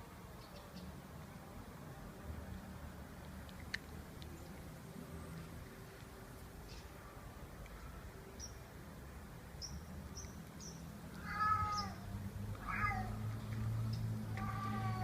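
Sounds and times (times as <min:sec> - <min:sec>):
cat meowing: 0:11.2 - 0:12.0, 0:12.6 - 0:13.2, 0:14.4 - 0:15.0.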